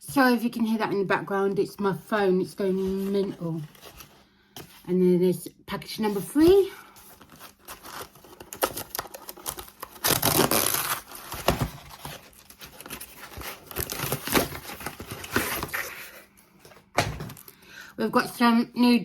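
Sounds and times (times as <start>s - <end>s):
packaging tearing and crinkling: 7.1s - 16.1s.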